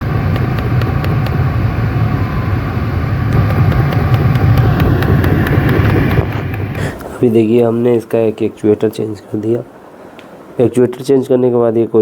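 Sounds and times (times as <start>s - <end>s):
engine and ac blower hum: 0.0s - 12.0s
flap actuator clicking: 3.3s - 7.7s.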